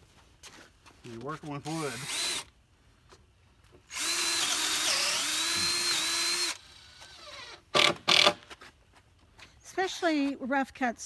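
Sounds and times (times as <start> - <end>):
power drill driving screw into wood: 1.6 - 2.5, 3.9 - 8.4.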